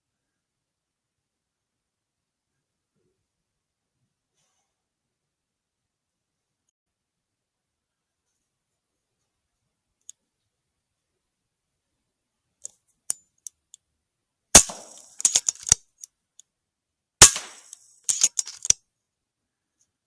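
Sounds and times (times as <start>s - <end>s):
air rifle shots: 14.6s - 15.8s, 17.2s - 18.7s
metallic clicks: 14.6s - 16.1s, 17.2s - 18.8s.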